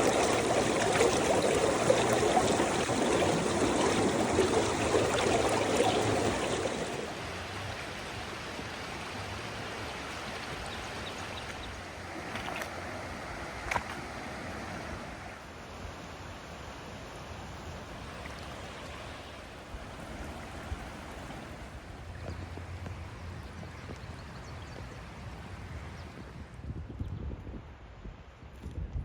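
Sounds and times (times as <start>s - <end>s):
floodwater rushing: 0.0s - 15.3s.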